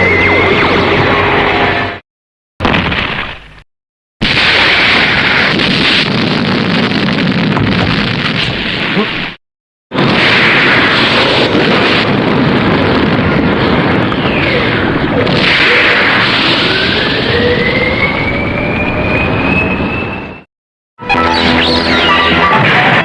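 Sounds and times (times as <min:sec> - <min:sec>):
loud dense rumbling noise: 0:00.0 - 0:02.0
falling whistle: 0:16.7 - 0:20.4, 0:21.1 - 0:23.0.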